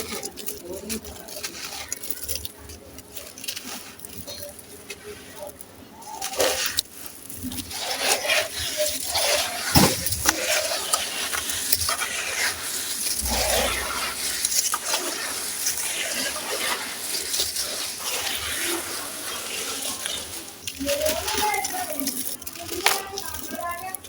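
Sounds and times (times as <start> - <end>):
sand cement crumbling in water: 6.2 - 24.0.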